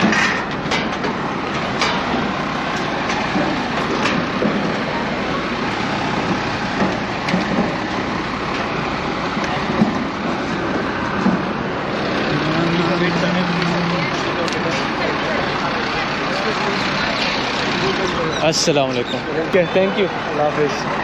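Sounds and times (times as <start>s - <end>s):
faint background chatter: 12.1s - 21.0s.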